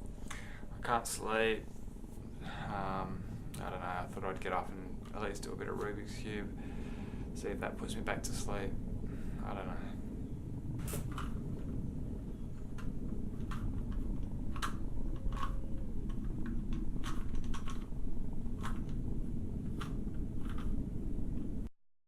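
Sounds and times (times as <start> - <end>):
low background rumble: 0.0 - 21.7
puzzle cube layers clicking: 12.7 - 17.9, 18.5 - 19.0, 19.7 - 20.8.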